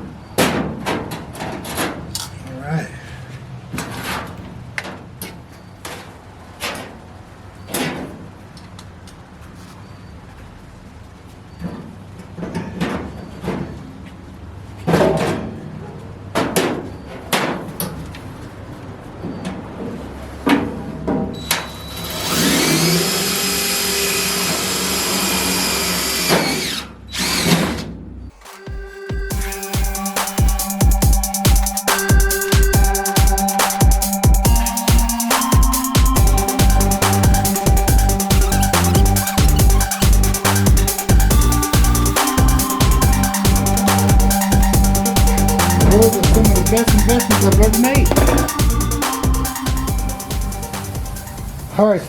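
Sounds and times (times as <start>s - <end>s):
electric drill through sheet metal: 21.7s - 27.8s
music with steady drum beat: 28.4s - 51.8s
steady low hum: 29.3s - 51.7s
sharp knocks on metal: 48.1s - 48.6s.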